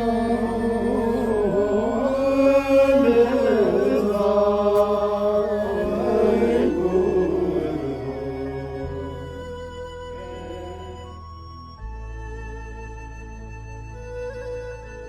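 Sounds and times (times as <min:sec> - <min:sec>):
chanted mantra: 0:00.0 - 0:11.3
steady drone: 0:00.0 - 0:15.0.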